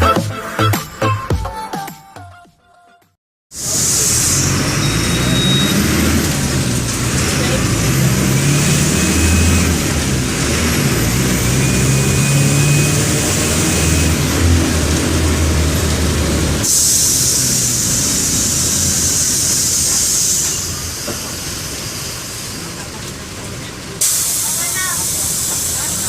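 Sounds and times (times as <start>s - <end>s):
bus diesel engine under load: 3.5s - 26.0s
compressed air hiss: 3.6s - 5.4s, 16.6s - 22.6s, 24.0s - 26.0s.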